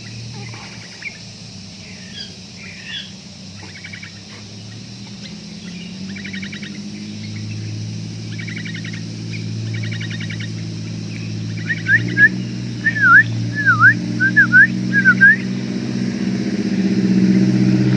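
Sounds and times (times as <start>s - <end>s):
bulbul rattling chatters: 0.0s - 15.4s
low motor hum: 0.0s - 17.9s
bird whistled notes: 11.2s - 15.5s.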